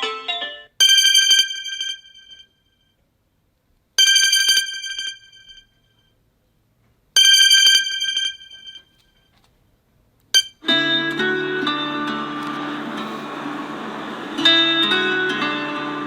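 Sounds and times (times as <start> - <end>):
bell-like phone ringtone: 0.0 - 2.7, 4.0 - 6.0, 7.2 - 9.1.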